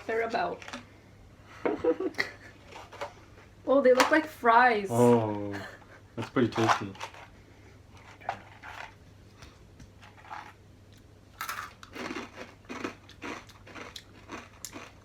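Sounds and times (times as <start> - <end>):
people crunching crisp snacks: 11.4 - 15.0.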